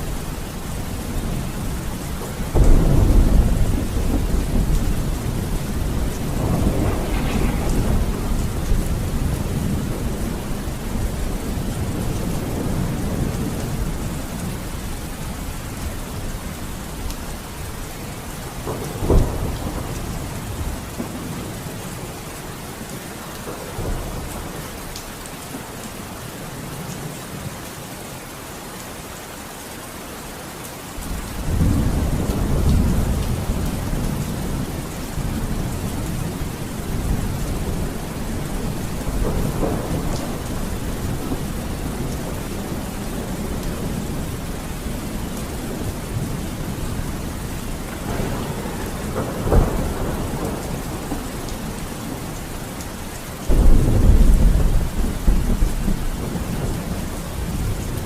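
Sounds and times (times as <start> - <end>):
low rolling thunder rumble: 0.0 - 25.0, 31.0 - 58.0
heavy rain: 0.0 - 58.0
thunder crack: 2.5 - 13.3, 18.6 - 21.3, 35.3 - 44.9, 48.0 - 52.3, 53.5 - 57.7.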